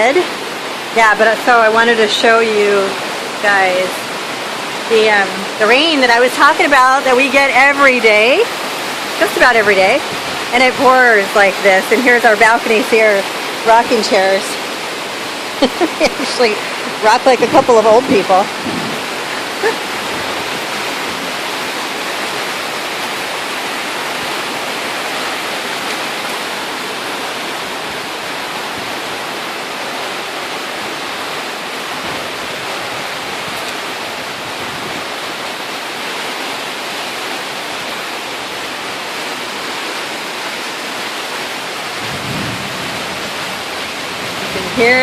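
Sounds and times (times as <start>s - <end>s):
heavy rain pouring: 0.0s - 45.0s
low thunder rumble: 17.0s - 21.4s, 42.0s - 45.0s.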